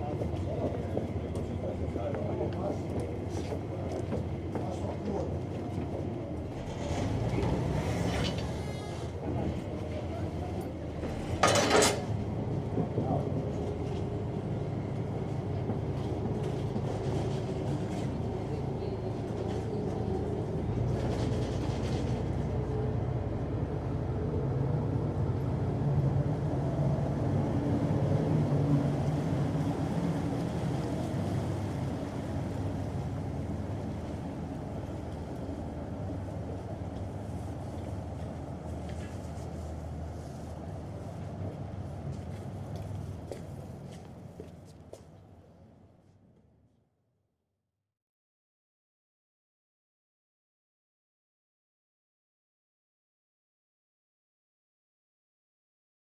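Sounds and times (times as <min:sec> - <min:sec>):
boat engine droning: 0:17.2 - 0:38.9.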